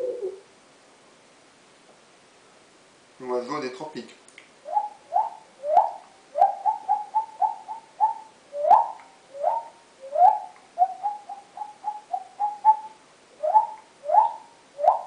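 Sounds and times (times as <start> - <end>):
person whistling bird calls: 8.0 - 11.2.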